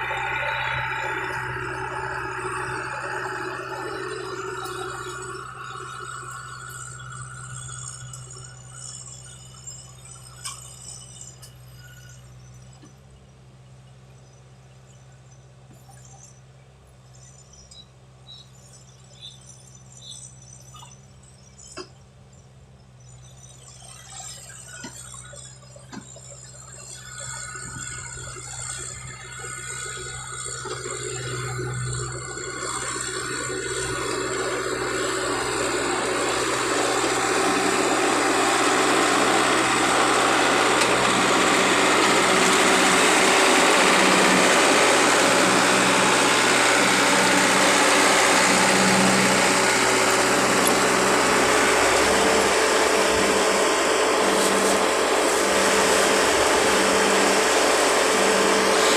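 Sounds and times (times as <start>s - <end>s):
machine rushing noise: 0.0s - 5.6s, 30.4s - 58.9s.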